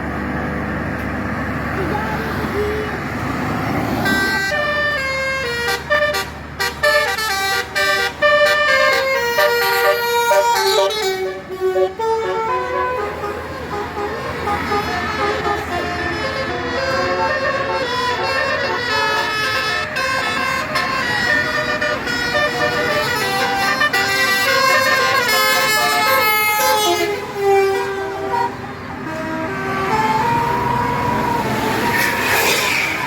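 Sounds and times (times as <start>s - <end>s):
musical bus horn melody: 3.7s - 33.0s.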